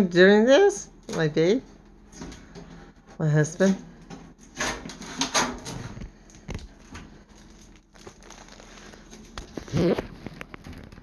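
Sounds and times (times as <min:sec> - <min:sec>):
packaging crinkling and rustling: 0:04.4 - 0:11.0.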